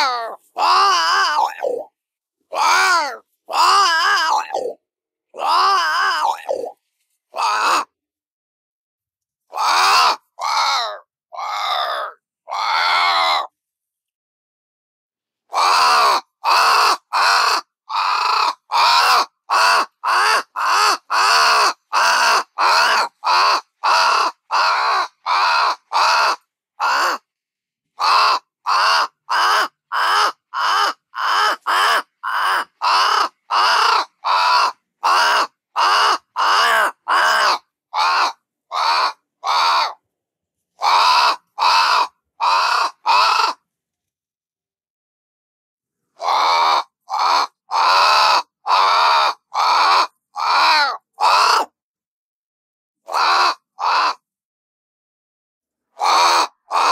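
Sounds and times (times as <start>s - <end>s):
crow cawing: 0.0s - 1.8s, 2.5s - 4.7s, 5.4s - 6.7s, 7.4s - 7.9s, 9.5s - 13.5s, 15.5s - 27.2s, 28.0s - 40.0s, 40.8s - 43.6s, 46.2s - 51.7s, 53.1s - 54.2s, 56.0s - 56.9s.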